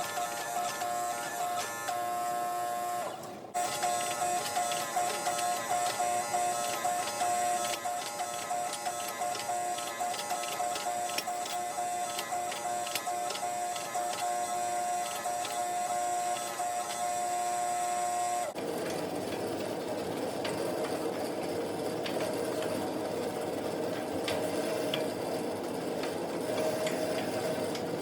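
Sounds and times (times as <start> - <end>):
machinery motor whine: 0.0 - 19.2.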